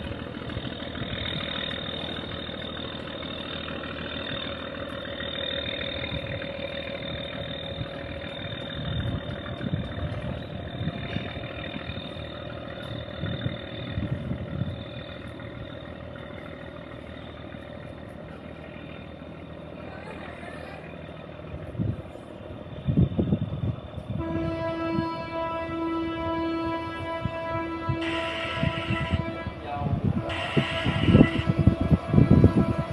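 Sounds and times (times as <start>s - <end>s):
diesel engine rumbling: 0.0s - 32.9s
steady horn tone: 24.1s - 32.9s.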